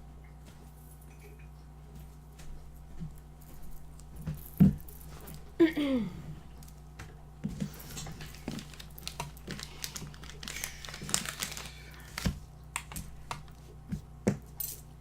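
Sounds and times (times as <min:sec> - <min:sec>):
crinkling: 0:07.5 - 0:13.6.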